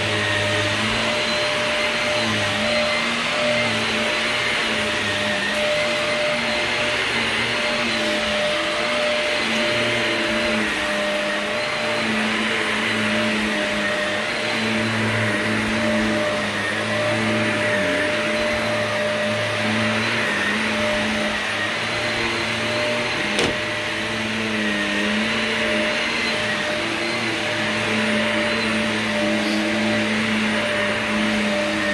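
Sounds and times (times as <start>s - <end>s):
vacuum cleaner running: 0.0s - 31.9s.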